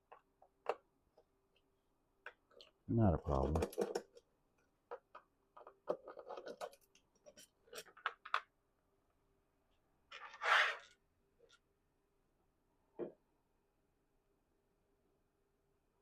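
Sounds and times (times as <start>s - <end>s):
small clicks and knocks: 0.0s - 8.5s
short scrape: 10.2s - 11.0s.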